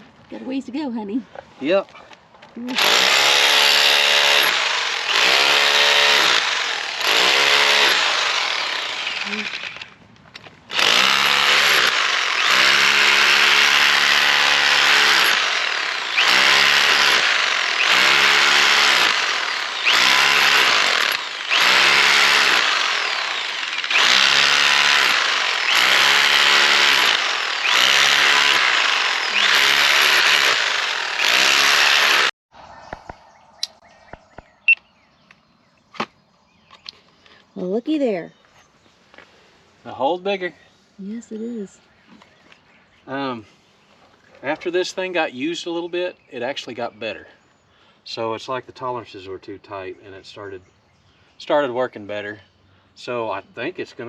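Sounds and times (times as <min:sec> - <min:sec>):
hammer drill hammering into wall: 0:02.8 - 0:09.9, 0:10.7 - 0:32.3.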